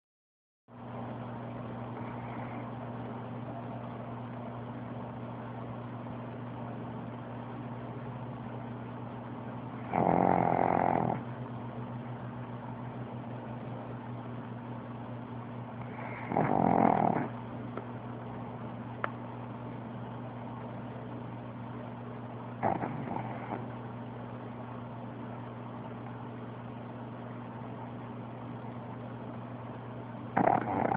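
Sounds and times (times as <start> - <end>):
steady low hum: 0.7 - 30.9
dog snoring loudly: 2.0 - 2.7, 9.7 - 11.3, 15.8 - 17.4, 22.6 - 23.7, 30.3 - 30.9.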